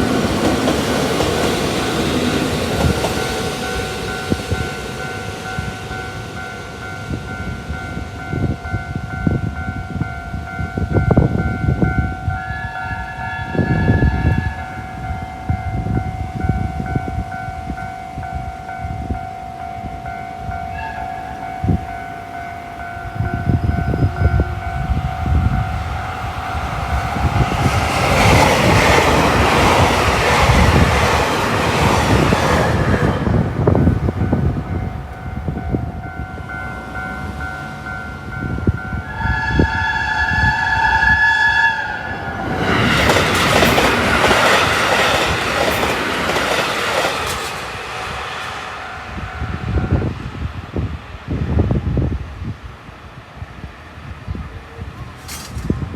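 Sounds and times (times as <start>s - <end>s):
train passing with wheel noise: 0.0s - 55.9s
train horn: 12.2s - 15.3s, 16.6s - 28.4s, 38.4s - 43.2s.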